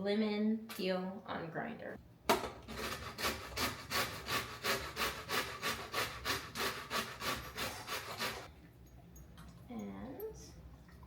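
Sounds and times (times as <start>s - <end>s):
lemon peel rasping on grater: 2.7s - 8.5s.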